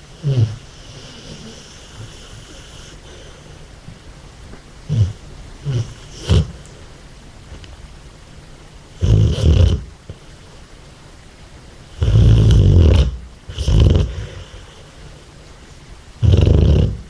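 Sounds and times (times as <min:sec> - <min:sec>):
dog snoring heavily: 0:00.0 - 0:03.7, 0:04.8 - 0:06.8, 0:08.9 - 0:10.2, 0:11.9 - 0:14.9, 0:16.2 - 0:17.0.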